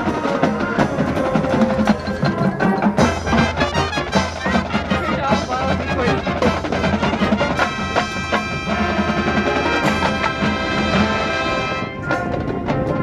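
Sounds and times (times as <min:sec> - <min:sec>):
marching band playing: 0:00.0 - 0:13.0
sharp percussion hits: 0:00.0 - 0:13.0
brass chord: 0:02.9 - 0:12.0.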